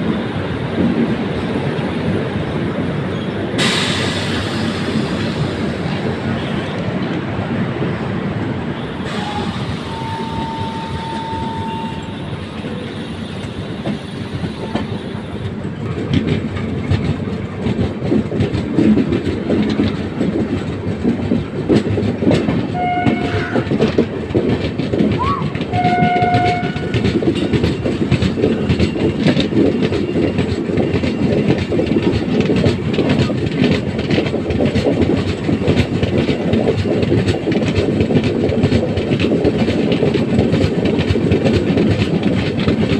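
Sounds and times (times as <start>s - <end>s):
train wheels clattering: 0.3s - 42.9s
locomotive horn blasts: 8.9s - 12.3s, 22.7s - 23.8s, 25.3s - 27.1s.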